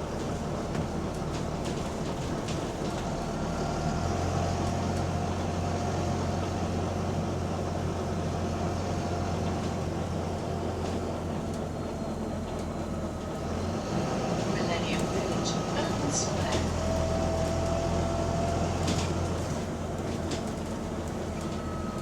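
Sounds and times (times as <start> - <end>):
bus diesel engine drone: 0.0 - 22.0.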